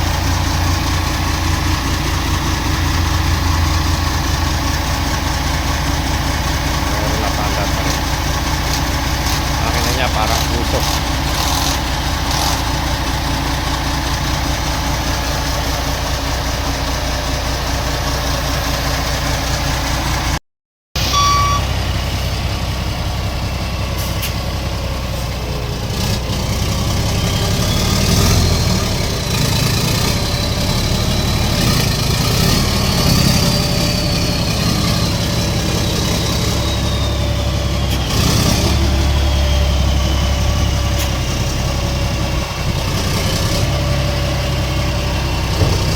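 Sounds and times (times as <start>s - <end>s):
diesel truck engine droning: 0.0s - 20.4s, 21.0s - 45.9s.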